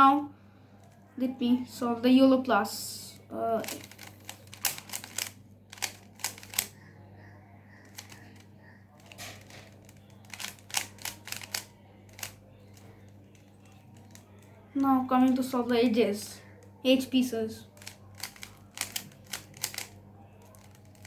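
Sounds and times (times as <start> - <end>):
puzzle cube clicking as turned: 3.6 - 6.7, 7.9 - 8.4, 9.0 - 12.8, 17.8 - 21.0.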